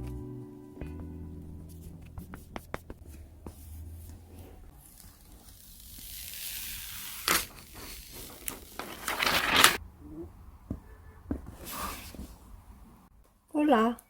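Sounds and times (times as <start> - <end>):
plastic film rustling: 4.8 - 9.8.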